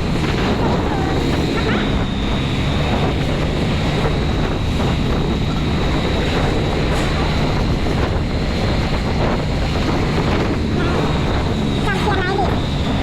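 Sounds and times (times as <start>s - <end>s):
surf washing: 0.0s - 13.0s
wind buffeting microphone: 0.0s - 13.0s.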